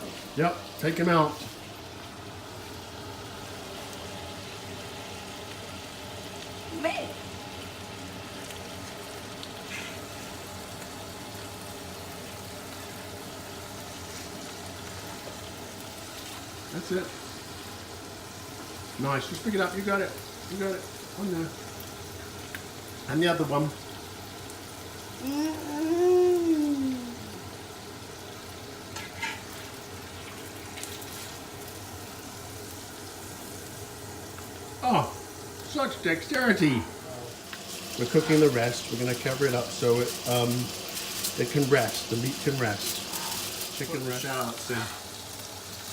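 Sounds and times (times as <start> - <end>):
chicken sizzling in a pan: 0.0 - 45.9
person's voice drawn-out tone: 25.2 - 27.4.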